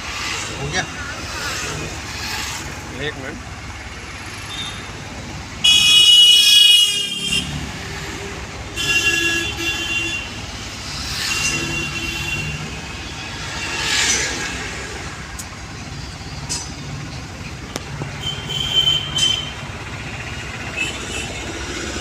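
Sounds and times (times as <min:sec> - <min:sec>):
engine idling: 0:00.0 - 0:11.1, 0:14.2 - 0:22.0
vehicles passing: 0:00.0 - 0:22.0
vehicle horns honking: 0:04.4 - 0:05.0, 0:05.6 - 0:07.7, 0:08.8 - 0:10.4, 0:11.2 - 0:13.9, 0:18.1 - 0:19.8, 0:20.6 - 0:21.6.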